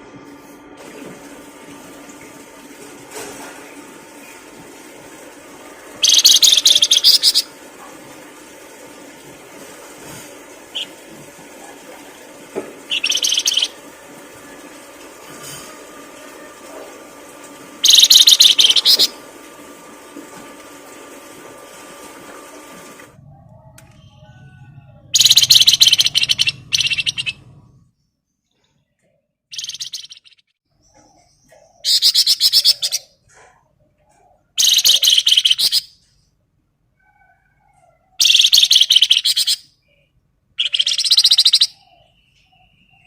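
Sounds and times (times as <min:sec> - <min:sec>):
songbird buzzy chattering: 0:06.0 - 0:07.5, 0:12.9 - 0:13.8, 0:17.8 - 0:19.2, 0:25.2 - 0:27.4, 0:29.5 - 0:33.1, 0:34.6 - 0:35.9, 0:38.2 - 0:39.6, 0:40.6 - 0:43.0.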